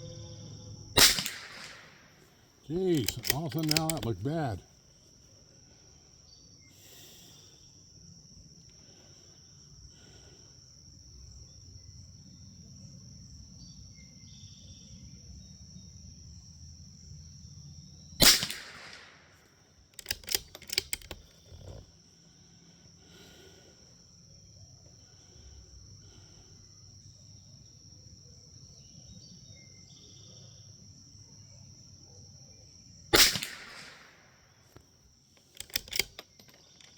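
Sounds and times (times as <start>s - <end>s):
rifle bolt metallic clicks: 1.0s - 2.0s, 2.7s - 4.6s, 18.2s - 19.1s, 20.0s - 21.8s, 33.2s - 34.8s, 35.4s - 36.9s
rifle shot with echo: 1.0s - 4.5s, 18.2s - 19.2s, 33.2s - 34.3s.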